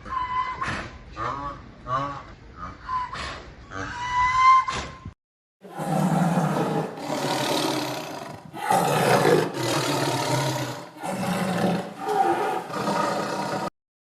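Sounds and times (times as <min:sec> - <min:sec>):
big cat roaring: 0:05.7 - 0:13.7.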